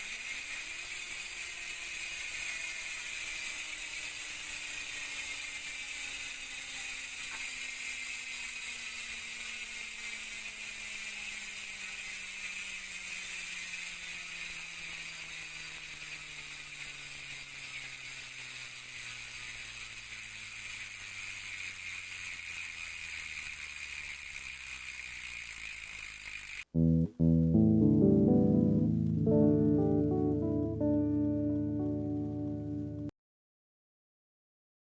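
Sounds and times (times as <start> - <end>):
bicycle freehub ratcheting buzz: 0.0 - 26.7.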